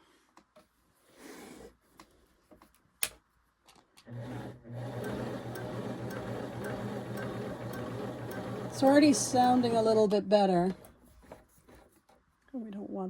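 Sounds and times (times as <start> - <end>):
sewing machine humming and ticking: 4.1 - 10.1.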